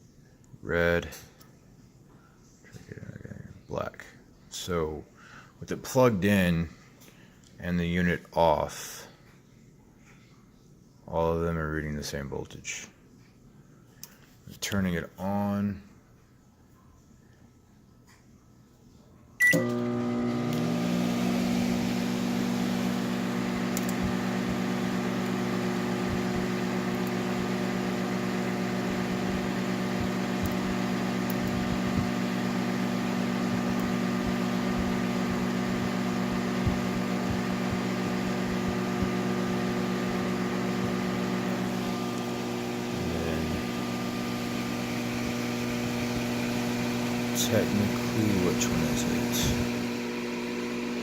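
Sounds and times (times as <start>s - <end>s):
microwave oven humming: 19.4s - 51.0s.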